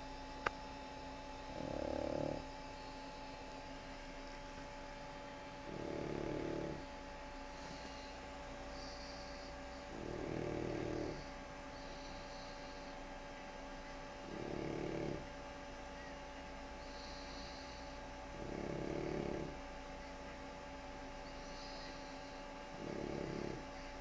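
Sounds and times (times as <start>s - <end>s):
dog snoring: 1.3s - 3.7s, 5.5s - 13.0s, 14.2s - 15.4s, 16.8s - 19.7s, 21.2s - 23.9s.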